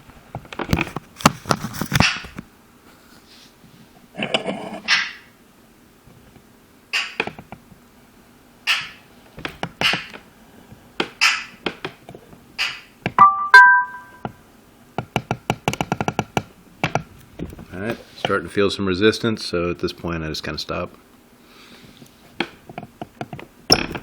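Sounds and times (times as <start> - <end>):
brief tone: 13.2 - 14.3.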